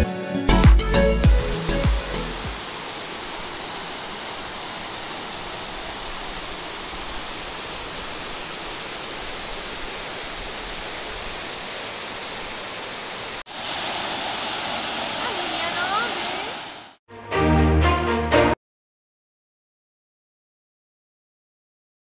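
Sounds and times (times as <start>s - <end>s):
waterfall rushing: 1.0s - 17.0s.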